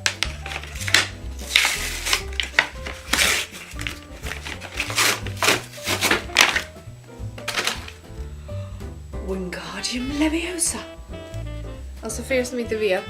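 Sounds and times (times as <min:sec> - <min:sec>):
rustling: 0:00.0 - 0:06.8, 0:07.4 - 0:08.1
background music with bass: 0:00.0 - 0:13.0.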